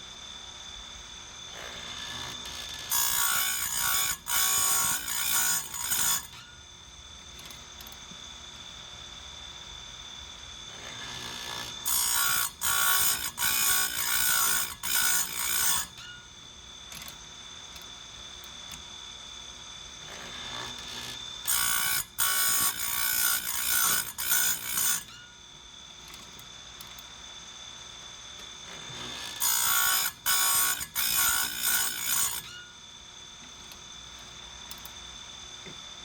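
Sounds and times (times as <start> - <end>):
chain grinder whining: 21.4 - 25.2, 29.0 - 32.8
harsh grinding bursts: 29.4 - 32.4.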